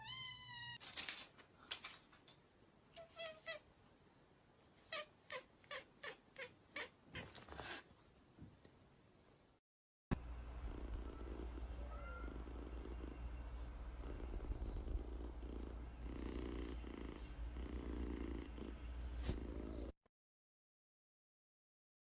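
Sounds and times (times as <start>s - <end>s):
cat purring: 10.5s - 20.0s.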